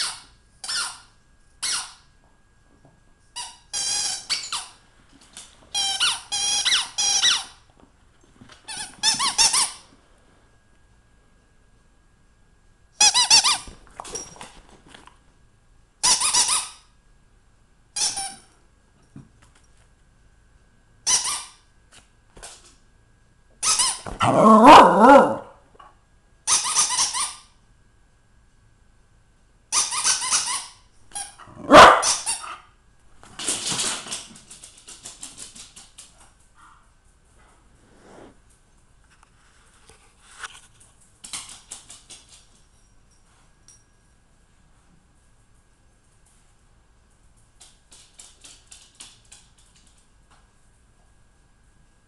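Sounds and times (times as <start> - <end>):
squeaky dog toy squeaking: 0.0 - 2.0, 3.4 - 4.8, 5.7 - 7.6, 13.0 - 13.7, 16.0 - 16.8, 18.0 - 18.4, 21.0 - 21.6, 23.6 - 24.2, 26.5 - 27.5, 29.7 - 31.4.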